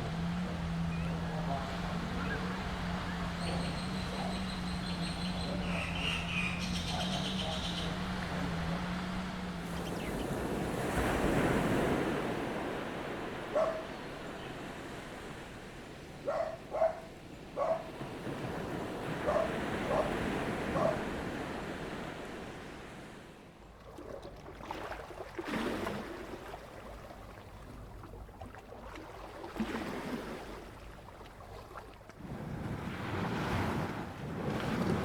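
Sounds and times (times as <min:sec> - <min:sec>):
waves washing on beach: 0:00.0 - 0:23.6, 0:28.9 - 0:35.0
waves sloshing against steps: 0:00.0 - 0:35.0
distant dog barking: 0:00.9 - 0:09.3, 0:13.5 - 0:14.1, 0:16.2 - 0:18.0, 0:19.1 - 0:21.3.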